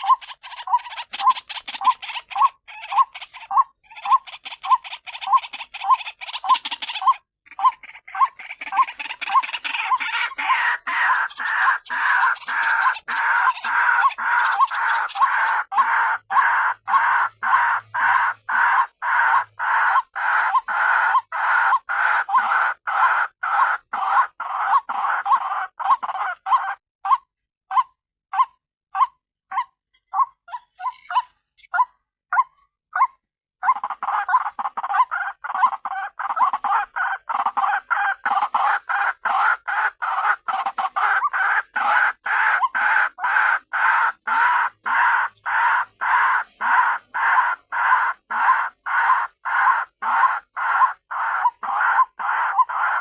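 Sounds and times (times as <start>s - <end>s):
bird harsh croaking calls: 0.0s - 27.8s, 33.6s - 53.0s.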